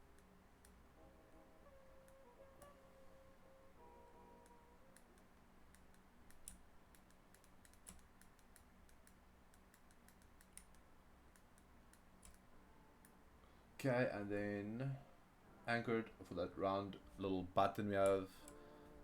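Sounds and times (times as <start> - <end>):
faint low hum: 0.0 - 19.0
computer mouse and keyboard clicks: 4.5 - 12.4.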